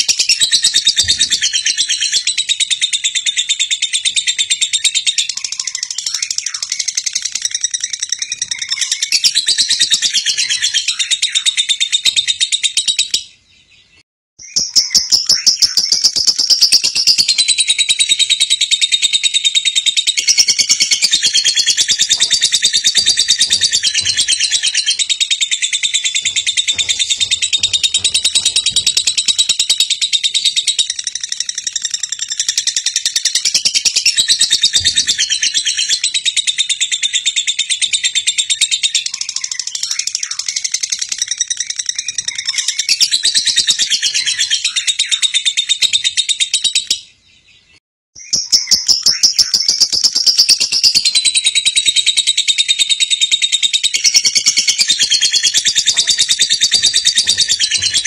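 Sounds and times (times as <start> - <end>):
birds chirping and calling: 0.0 - 58.0.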